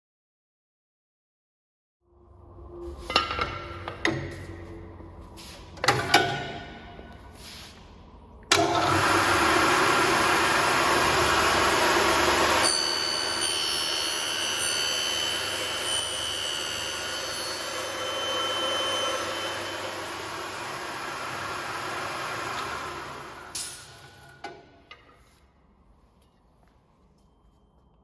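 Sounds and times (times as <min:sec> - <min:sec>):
milling machine running: 0:08.5 - 0:23.7
high whining tones: 0:10.9 - 0:23.6.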